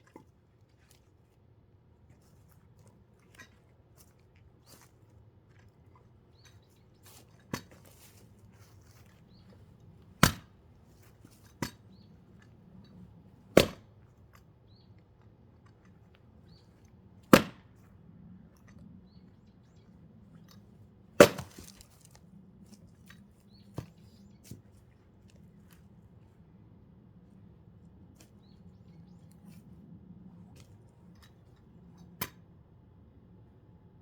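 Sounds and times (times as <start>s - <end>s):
axe splitting log: 10.2s - 10.6s, 13.6s - 13.9s, 17.3s - 17.7s, 21.2s - 22.2s.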